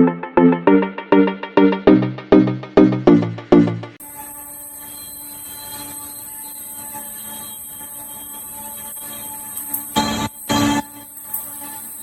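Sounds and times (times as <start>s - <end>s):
synth music beat: 0.0s - 11.3s
router spindles whining: 4.0s - 12.0s.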